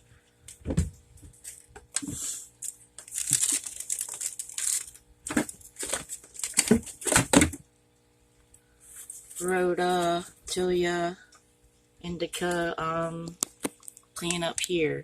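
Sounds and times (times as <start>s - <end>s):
crinkling and rustling: 0.6s - 7.6s.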